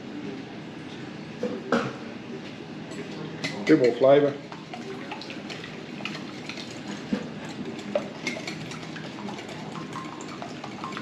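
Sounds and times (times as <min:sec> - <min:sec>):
utensil tapping mixing bowl: 0:03.7 - 0:11.0.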